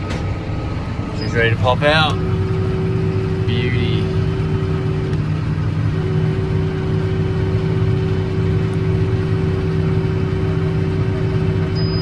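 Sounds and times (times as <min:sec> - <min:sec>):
tractor diesel engine running: 0:00.0 - 0:12.0
steady high whine: 0:00.4 - 0:09.4.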